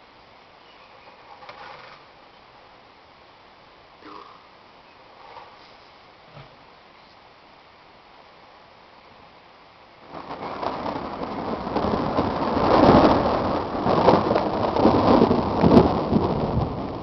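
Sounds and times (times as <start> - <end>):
roll of thunder: 10.0 - 17.0
thunderclap: 10.0 - 17.0.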